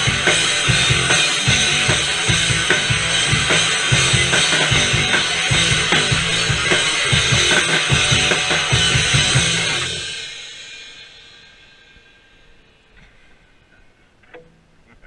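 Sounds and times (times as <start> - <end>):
punk rock band playing: 0.0 - 11.9
loud drum kit: 0.0 - 12.0
crashing cymbals: 0.0 - 12.9.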